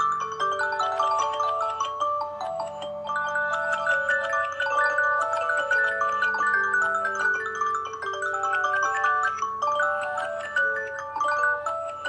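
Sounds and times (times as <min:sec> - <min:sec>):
phone alarm melody of mallet notes: 0:00.0 - 0:12.0.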